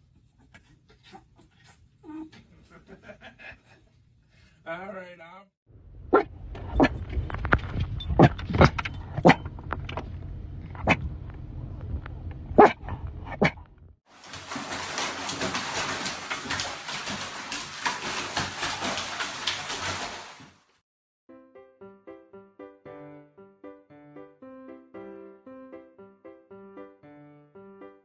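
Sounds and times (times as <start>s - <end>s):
low rumble: 5.7s - 14.0s
dog barking: 6.1s - 7.0s, 12.6s - 13.6s.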